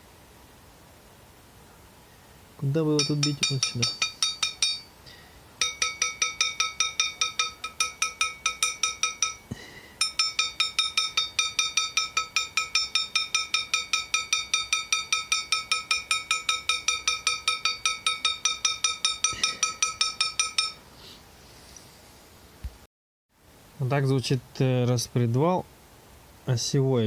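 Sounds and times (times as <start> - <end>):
rapid metal tapping: 3.0 - 5.0, 5.6 - 20.8.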